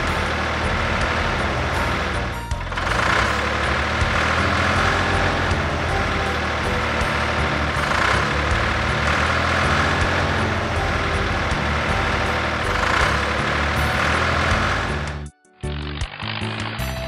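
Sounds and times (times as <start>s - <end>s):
heavy truck engine running: 0.0s - 17.0s.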